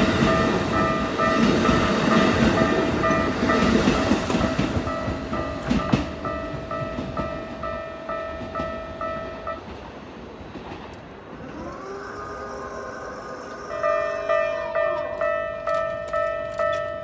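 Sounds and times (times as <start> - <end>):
level crossing alarm ringing: 0.0 - 9.7, 13.2 - 17.0
passing train rumble: 0.0 - 17.0.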